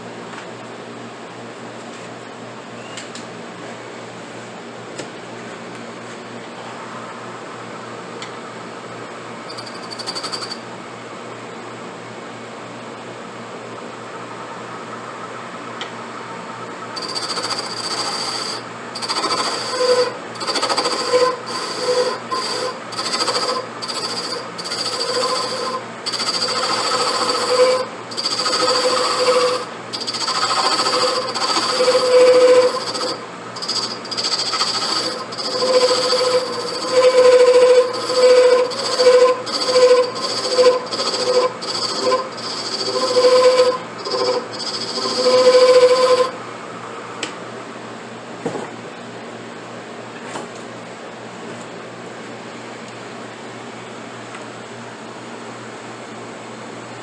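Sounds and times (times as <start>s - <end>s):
lathe running hum: 6.4s - 47.8s
lathe tool cutting with hissing whine: 16.6s - 46.4s.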